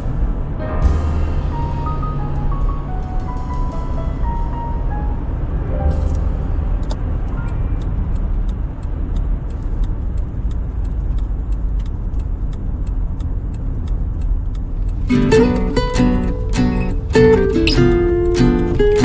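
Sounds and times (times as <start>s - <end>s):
low rumble of tyres and engine: 0.0s - 19.0s
faint regular ticking: 6.8s - 19.0s.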